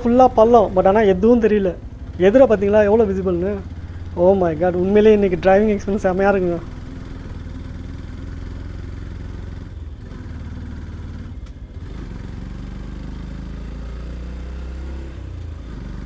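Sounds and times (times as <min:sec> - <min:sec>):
wind and road noise: 0:00.0 - 0:07.4
motorcycle engine running: 0:00.0 - 0:08.4.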